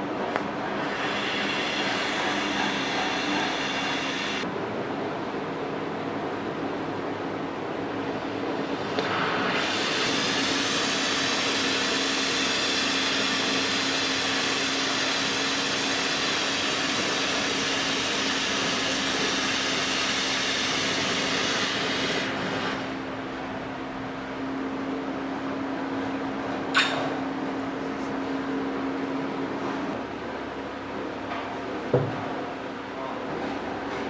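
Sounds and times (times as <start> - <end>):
machine motor hum: 0.0 - 4.5
loud even hiss: 0.3 - 4.4, 8.6 - 23.1.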